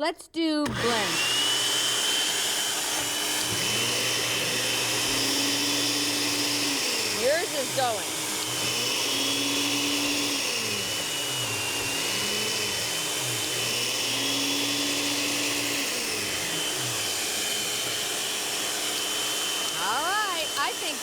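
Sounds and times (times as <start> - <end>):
blenders chopping frozen fruit: 0.6 - 21.0.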